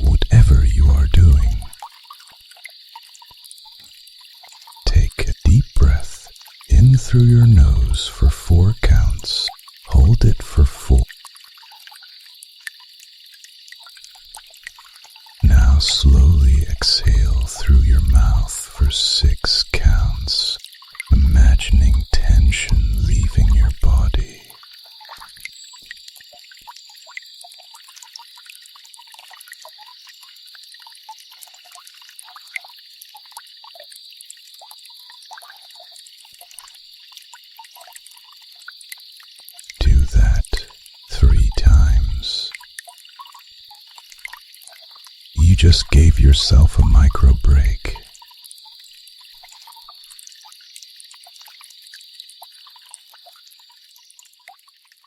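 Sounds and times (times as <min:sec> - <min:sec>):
drips plinking on water: 0:11.0 - 0:15.5, 0:24.5 - 0:39.8, 0:48.2 - 0:55.0.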